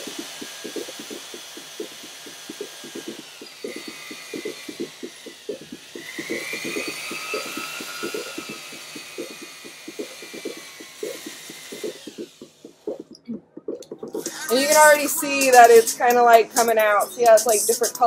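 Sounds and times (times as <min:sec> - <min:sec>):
electric drill whine: 0:00.0 - 0:13.0.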